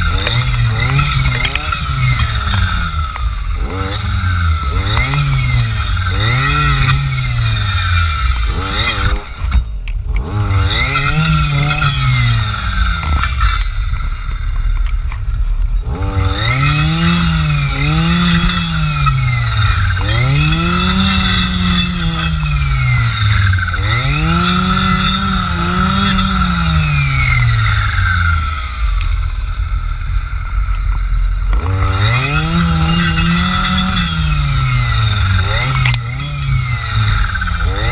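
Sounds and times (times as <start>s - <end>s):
clearing saw engine revving: 0.0s - 13.8s, 15.8s - 29.4s, 31.4s - 37.9s
high blade whine: 15.9s - 37.9s.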